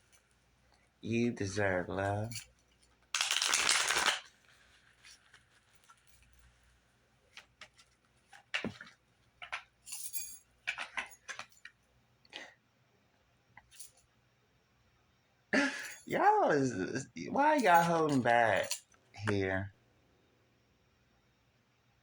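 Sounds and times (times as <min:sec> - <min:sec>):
cards clicking as laid down: 0:03.2 - 0:04.3, 0:07.3 - 0:09.7
card deck rustling: 0:03.2 - 0:06.1.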